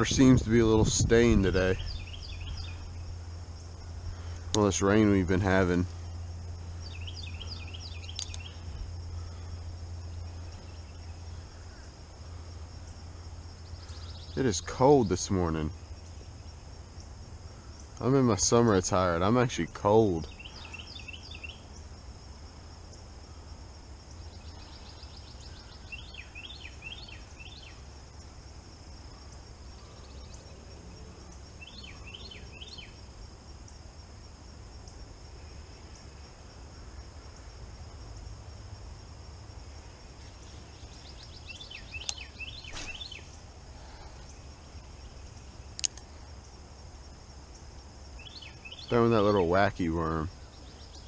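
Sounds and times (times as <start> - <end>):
bird chirping: 0.0 - 18.6, 19.6 - 21.9, 24.1 - 28.4, 29.2 - 33.0, 40.1 - 46.2, 47.5 - 51.0
crickets droning: 0.0 - 51.0
sharp clicks: 8.0 - 8.5, 45.7 - 46.1.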